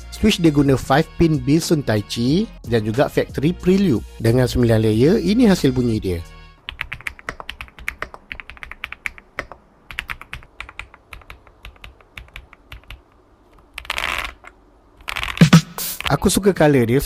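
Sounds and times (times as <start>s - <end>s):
mechanical keyboard clacks: 6.7s - 15.4s.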